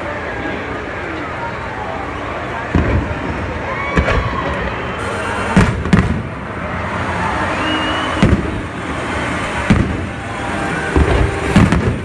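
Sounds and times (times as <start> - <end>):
steady background noise: 0.0 - 12.0
firework shells bursting: 4.0 - 12.0.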